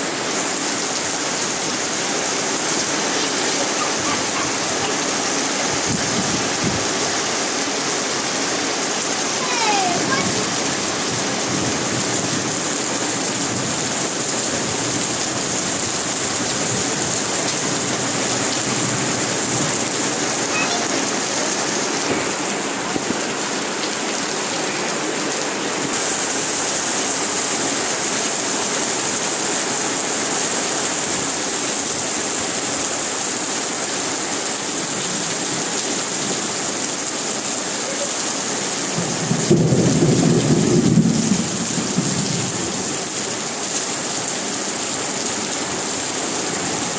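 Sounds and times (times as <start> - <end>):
steady rain falling: 0.0 - 46.9
low rumble of thunder: 39.0 - 42.6.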